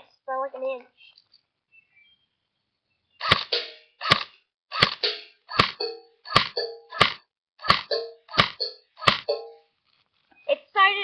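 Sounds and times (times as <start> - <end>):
airsoft rifle shots: 3.2 - 9.4.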